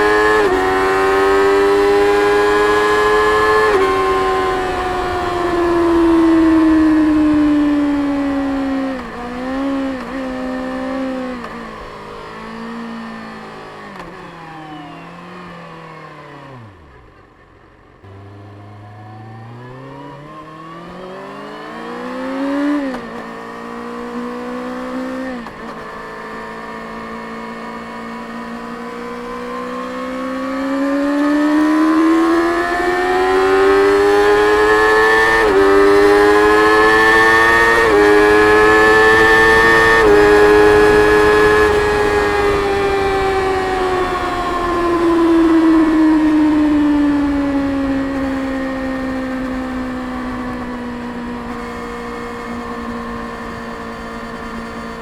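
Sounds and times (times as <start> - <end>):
motorcycle engine revving: 0.0 - 55.0
motorcycle gear upshifts: 31.3 - 55.0.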